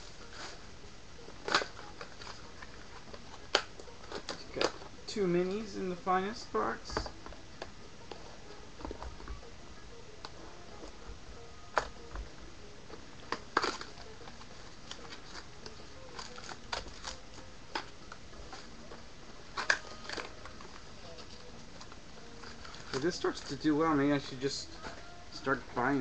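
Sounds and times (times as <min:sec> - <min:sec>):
packaging rustling: 0:01.3 - 0:05.0, 0:12.9 - 0:26.0
card packaging clicks and taps: 0:01.4 - 0:04.9, 0:06.9 - 0:08.2, 0:11.7 - 0:12.3, 0:12.9 - 0:25.0.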